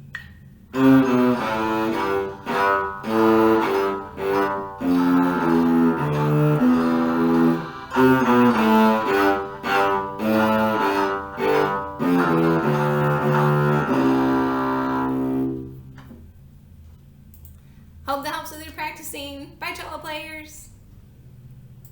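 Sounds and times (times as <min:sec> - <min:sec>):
bowed cello waltz: 0:00.7 - 0:16.0.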